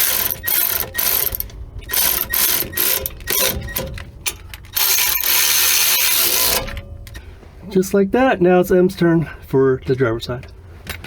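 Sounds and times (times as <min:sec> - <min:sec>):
ratchet wrench clicking: 0:00.0 - 0:06.8.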